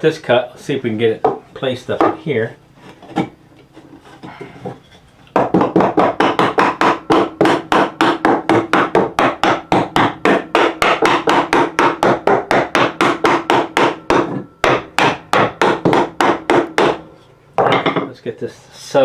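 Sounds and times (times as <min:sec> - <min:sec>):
hammer tapping wooden board: 0:05.3 - 0:18.1.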